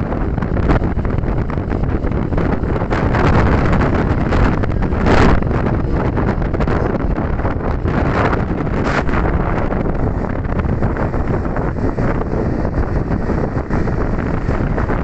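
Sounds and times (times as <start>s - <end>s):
storm wind buffeting microphone: 0.0s - 15.0s.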